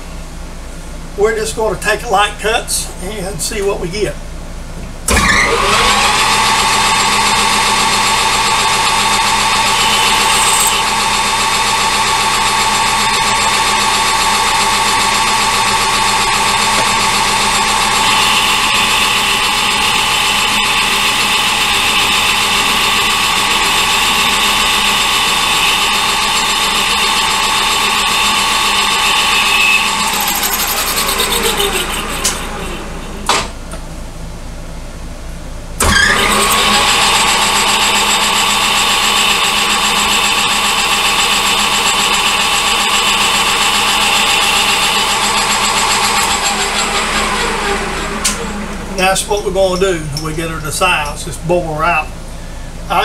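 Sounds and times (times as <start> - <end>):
metal lathe running: 5.1 - 33.4, 35.8 - 51.4
machine winding down: 5.1 - 33.5, 35.8 - 52.1
high-pitched whine: 8.9 - 11.2, 16.6 - 33.4.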